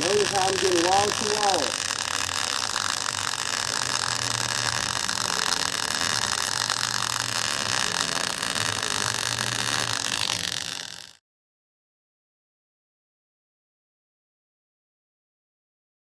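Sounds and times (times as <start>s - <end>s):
arc welding crackle and hiss: 0.0s - 11.2s.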